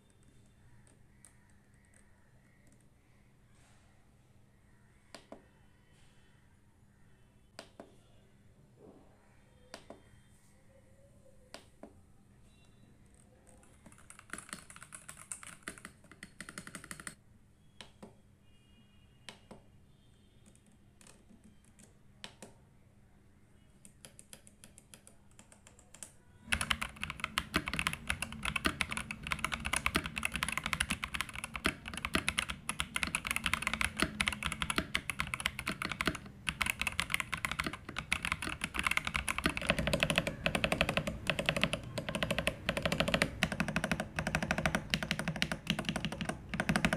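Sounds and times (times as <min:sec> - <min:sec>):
mechanical keyboard typing: 0:13.4 - 0:17.2, 0:23.9 - 0:46.9.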